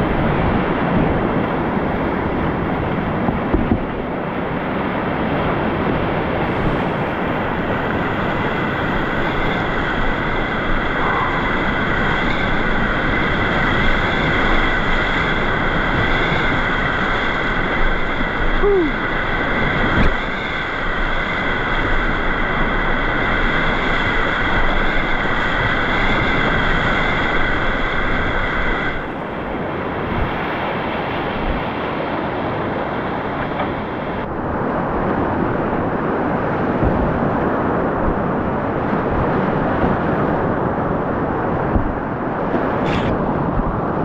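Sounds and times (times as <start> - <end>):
whitewater rushing: 4.0 - 34.2.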